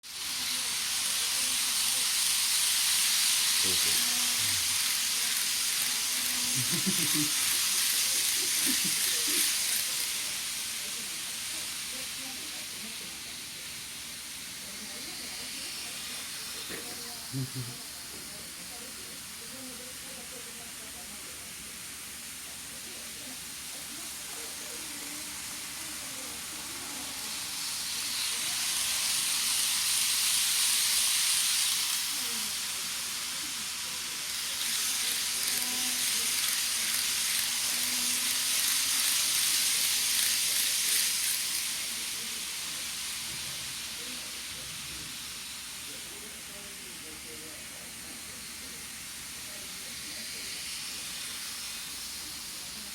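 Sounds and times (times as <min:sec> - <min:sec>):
model train wheels and motor: 0:00.0 - 0:52.9.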